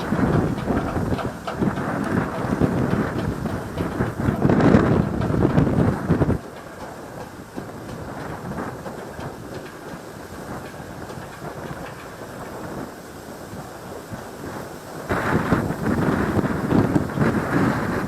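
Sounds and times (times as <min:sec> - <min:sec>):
wind buffeting microphone: 0:00.0 - 0:18.0.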